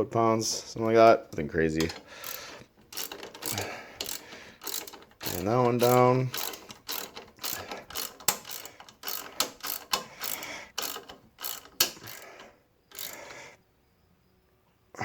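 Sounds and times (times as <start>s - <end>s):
ratchet wrench clicking: 1.7s - 13.4s.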